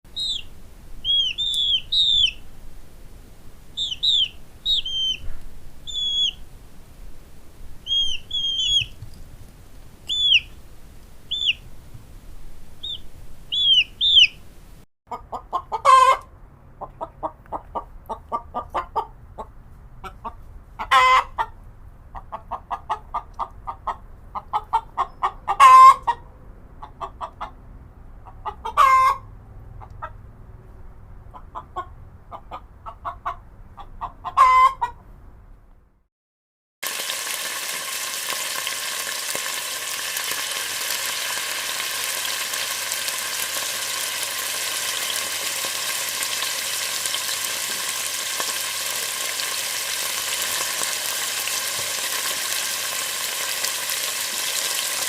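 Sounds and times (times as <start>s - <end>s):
chicks peeping: 0.1s - 2.4s, 3.8s - 6.4s, 7.8s - 9.0s, 10.1s - 10.6s, 11.3s - 11.6s, 12.8s - 14.4s
hen clucking: 0.1s - 2.4s, 3.8s - 6.4s, 7.8s - 8.9s, 10.1s - 10.6s, 11.3s - 11.6s, 12.8s - 14.4s, 15.1s - 27.6s, 28.2s - 30.2s, 31.3s - 35.1s
hen squawking: 0.1s - 2.4s, 3.8s - 6.4s, 7.9s - 8.9s, 10.1s - 10.6s, 11.3s - 11.6s, 12.8s - 14.4s.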